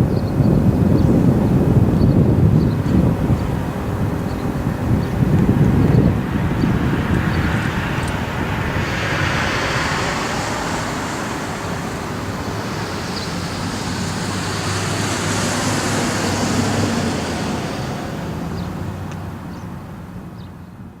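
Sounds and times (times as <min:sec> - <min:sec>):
siren modulator whirring rush: 0:01.5 - 0:18.8.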